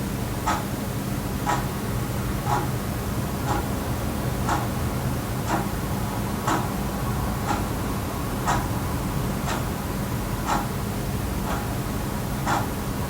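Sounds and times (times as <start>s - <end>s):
wall clock ticking: 0.4s - 0.8s, 1.4s - 1.8s, 2.4s - 2.8s, 3.4s - 3.8s, 4.4s - 5.8s, 6.4s - 7.8s, 8.4s - 8.8s, 9.5s - 9.7s, 10.4s - 10.8s, 11.4s - 11.8s, 12.4s - 12.8s.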